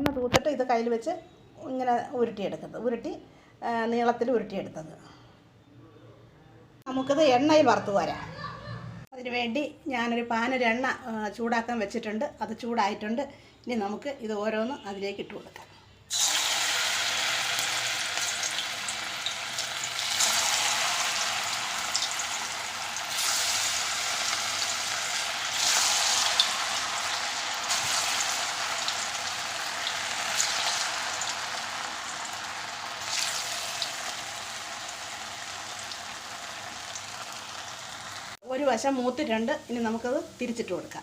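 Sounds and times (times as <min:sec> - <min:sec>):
dough deep-frying in oil: 0:16.1 - 0:40.9.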